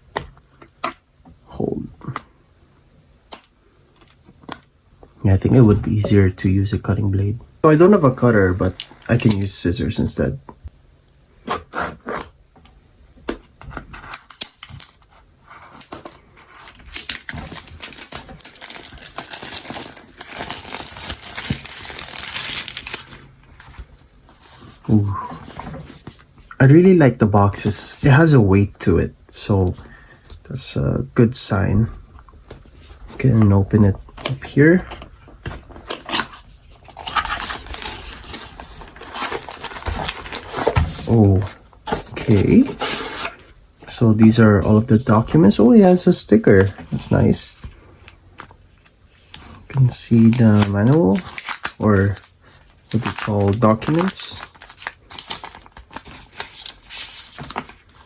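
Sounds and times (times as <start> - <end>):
packaging crinkling and tearing: 13.7 - 23.8, 35.4 - 43.4, 46.5 - 58.0
cardboard rustling and scraping: 15.1 - 26.3, 32.6 - 43.5, 48.8 - 58.0.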